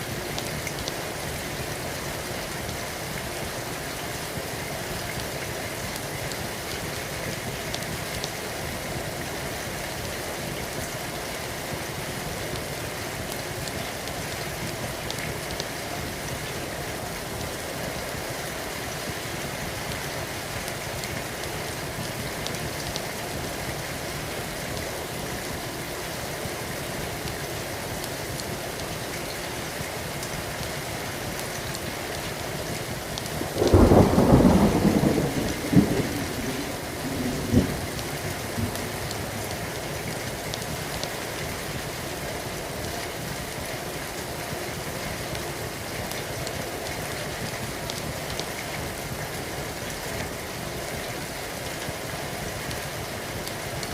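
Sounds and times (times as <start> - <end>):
steady rain: 0.0 - 53.9
thunderclap: 33.6 - 38.0.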